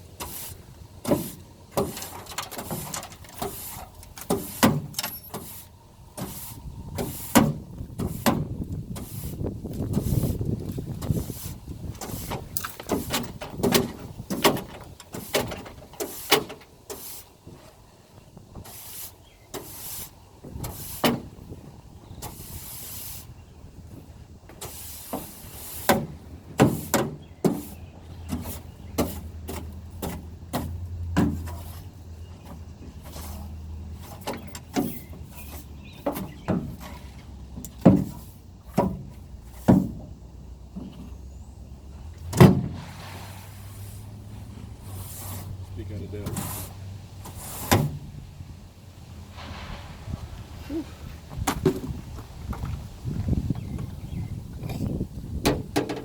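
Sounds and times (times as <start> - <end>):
debris clattering in a truck bed: 0.1 - 6.4, 7.0 - 18.8, 23.8 - 41.2, 41.9 - 53.3
short hisses: 42.8 - 44.1, 49.3 - 51.2.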